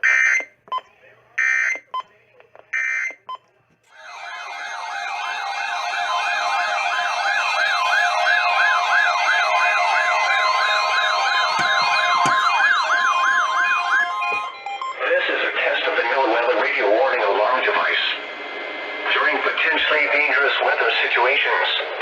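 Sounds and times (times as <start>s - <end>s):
steady high tone: 3.9s - 20.3s
electronic siren yelping: 4.0s - 15.0s.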